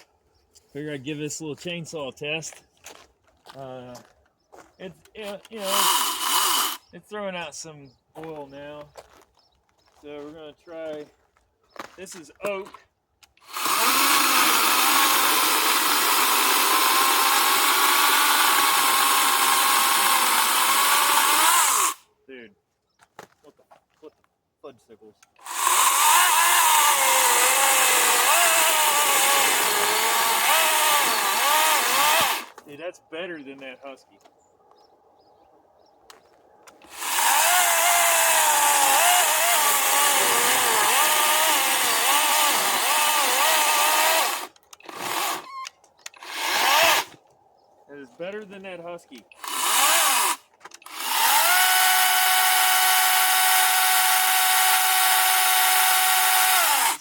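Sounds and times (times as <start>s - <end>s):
electric chainsaw cutting wood: 5.6s - 6.8s, 13.4s - 22.0s, 25.4s - 32.6s, 36.8s - 45.5s, 46.2s - 47.2s, 49.4s - 57.0s.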